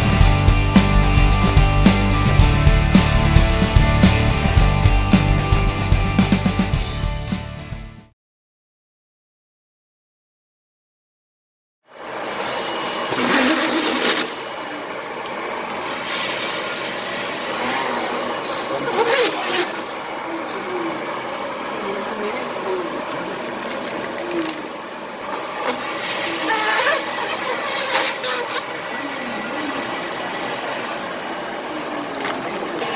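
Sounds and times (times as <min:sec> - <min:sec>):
band sealer machine hum: 0:00.0 - 0:07.9, 0:12.0 - 0:32.9
hissing bursts: 0:12.3 - 0:31.6.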